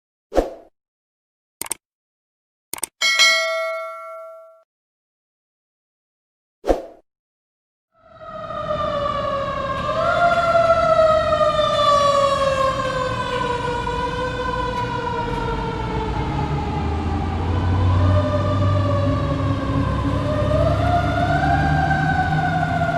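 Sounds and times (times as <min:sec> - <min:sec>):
fire truck siren wailing: 0:08.0 - 0:22.9.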